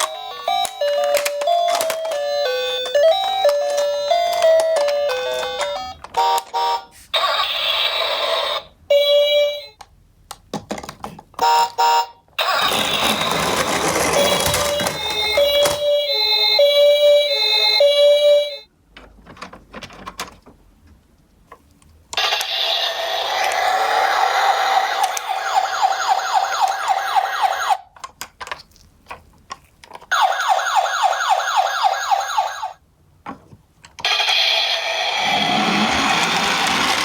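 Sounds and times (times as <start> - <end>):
yelping siren: 23.7 - 27.8, 30.1 - 32.8
two-tone siren: 24.2 - 27.8, 30.1 - 32.8.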